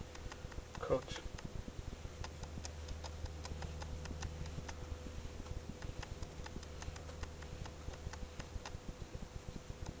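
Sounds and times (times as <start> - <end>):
faint steady whine: 0.0 - 10.0
low electric hum: 0.0 - 10.0
light clicks: 2.2 - 4.8.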